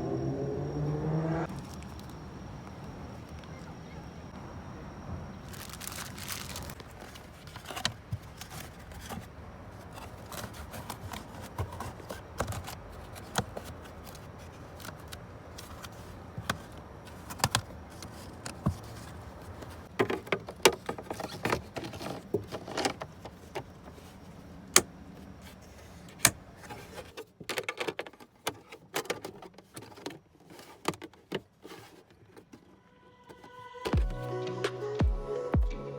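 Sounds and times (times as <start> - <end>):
plastic clicks and rattles: 26.1 - 32.5.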